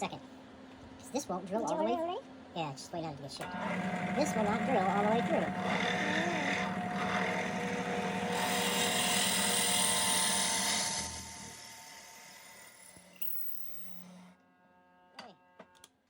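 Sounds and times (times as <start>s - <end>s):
drill press boring into wood: 3.4s - 14.3s.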